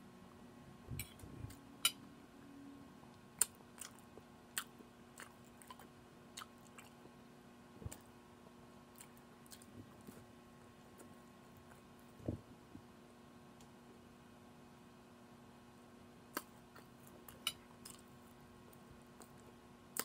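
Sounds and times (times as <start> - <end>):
faint steady hum: 0.0 - 20.0
person chewing food: 3.4 - 7.2, 8.9 - 12.1, 16.3 - 20.0.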